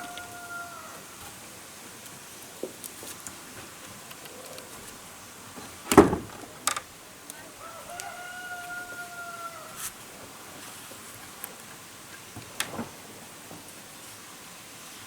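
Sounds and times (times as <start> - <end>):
rooster crowing: 0.0 - 1.2, 7.5 - 9.9.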